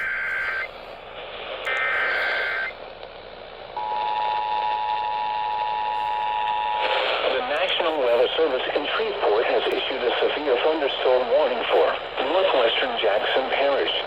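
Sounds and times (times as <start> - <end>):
warbling data tones: 0.0 - 0.8, 1.7 - 2.8
radio static hiss: 0.0 - 14.0.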